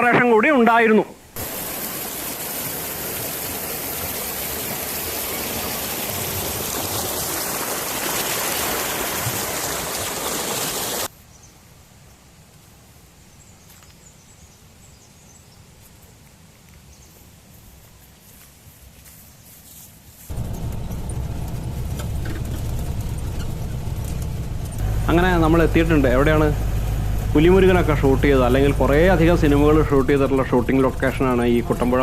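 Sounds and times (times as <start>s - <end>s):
waterfall rushing water: 1.4s - 11.1s.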